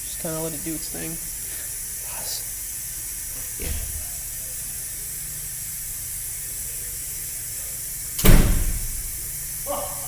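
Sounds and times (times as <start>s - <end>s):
refrigerant hissing: 0.0s - 10.0s
loud thump: 8.2s - 9.0s.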